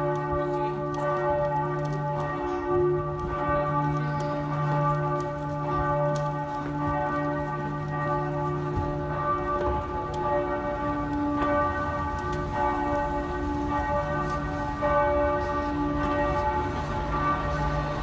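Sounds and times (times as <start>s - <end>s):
church bells pealing: 0.0s - 18.0s.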